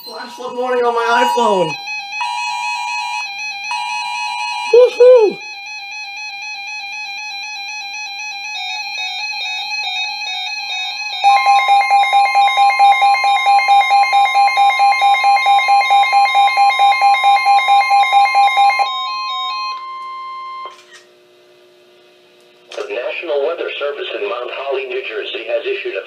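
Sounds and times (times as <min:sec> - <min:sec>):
steady higher tone: 0:00.0 - 0:01.8
steady electronic alert tone: 0:00.0 - 0:03.2
pulsing alarm: 0:00.0 - 0:20.8.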